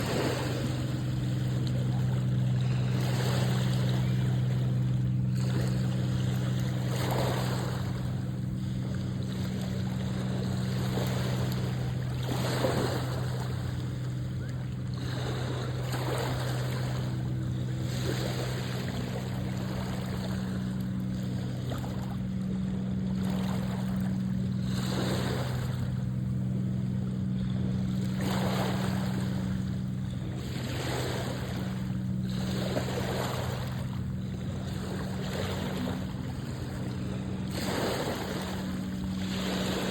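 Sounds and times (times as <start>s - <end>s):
ship engine humming: 0.0s - 39.9s
water splashing along hull: 0.0s - 39.9s.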